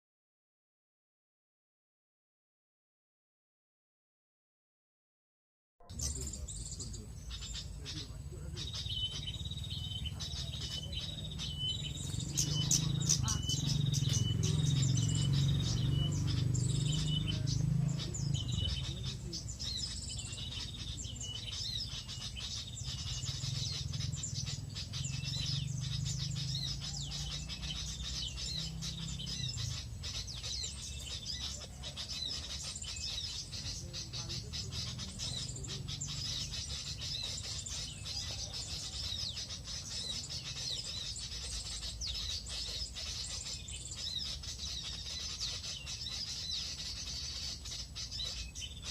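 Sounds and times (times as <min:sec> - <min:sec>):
wild birds chirping: 0:05.8 - 0:48.9.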